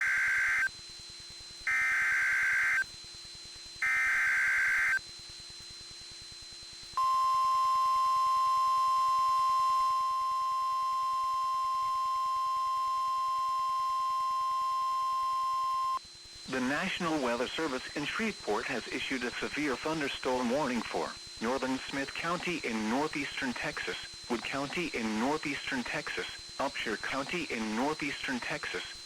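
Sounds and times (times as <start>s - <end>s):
steady warning alarm tone: 0.0s - 0.7s, 1.3s - 29.0s
digital data tone bursts: 21.4s - 29.0s.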